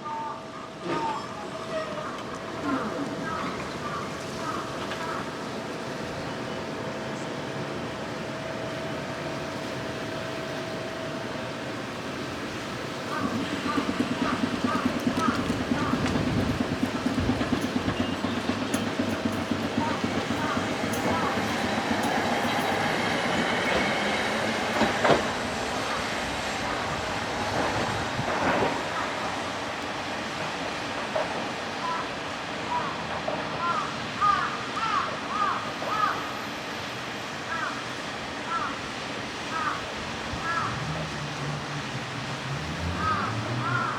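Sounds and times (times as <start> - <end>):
streetcar rumbling: 0.0 - 43.9
wheels clacking over rail joints: 1.8 - 36.2, 39.2 - 43.9.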